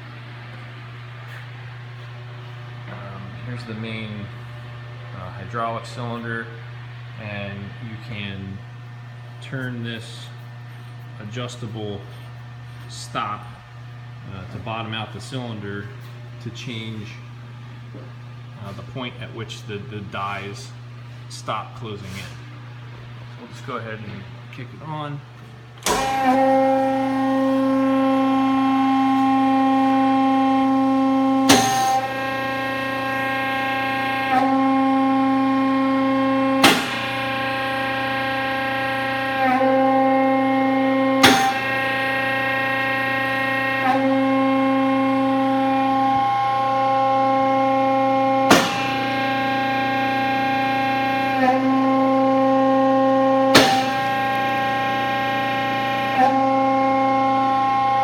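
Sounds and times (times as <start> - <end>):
hydraulic machine humming: 0.0 - 58.0
sharp clunks: 25.8 - 26.5, 31.5 - 32.1, 36.6 - 37.2, 41.2 - 41.8, 48.5 - 49.2, 53.5 - 54.2.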